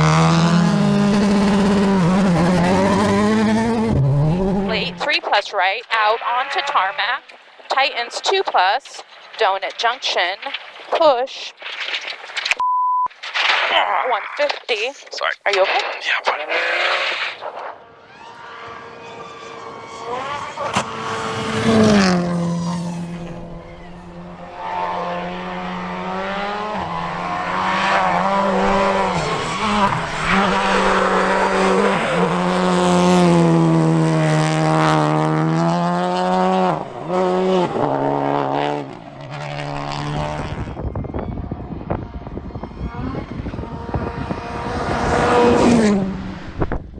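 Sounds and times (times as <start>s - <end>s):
rally car engine revving: 0.0s - 5.1s, 16.4s - 40.8s, 41.8s - 46.9s.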